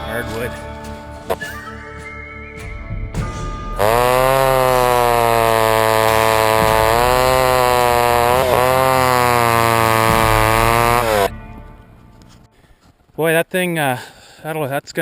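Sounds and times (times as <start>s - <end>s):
chainsaw running at full throttle: 3.8s - 11.4s.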